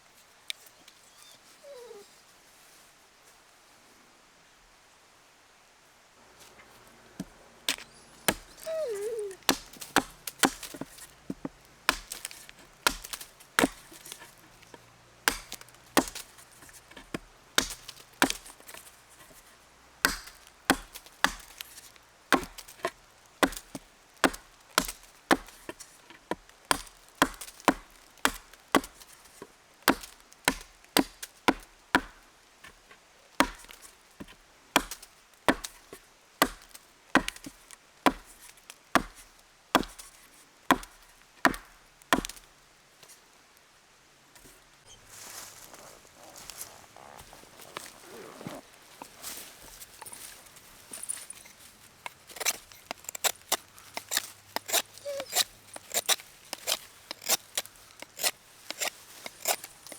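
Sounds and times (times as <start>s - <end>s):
wood being chopped: 7.2s - 42.5s.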